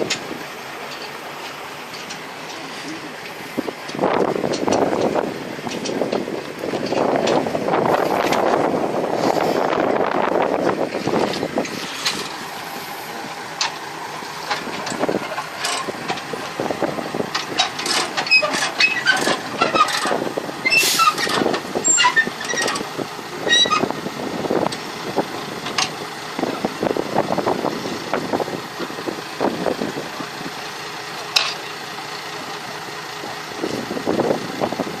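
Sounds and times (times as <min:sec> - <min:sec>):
knocks and clanks: 0:03.8 - 0:08.7, 0:13.2 - 0:22.9, 0:31.2 - 0:31.7.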